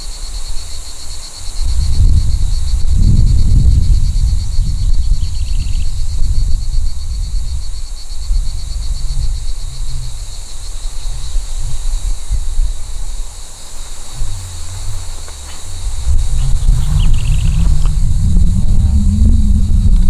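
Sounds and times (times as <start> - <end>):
wind buffeting microphone: 0.0 - 20.0
grasshoppers chirring: 7.1 - 20.0.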